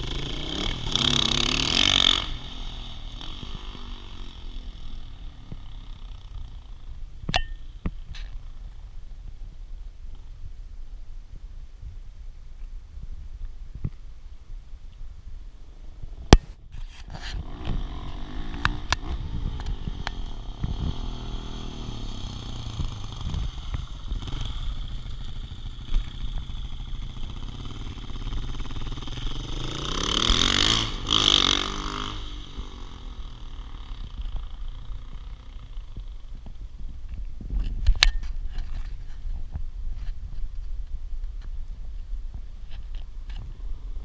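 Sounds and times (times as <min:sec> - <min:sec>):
motorcycle engine revving: 0:00.0 - 0:07.6, 0:17.1 - 0:36.6.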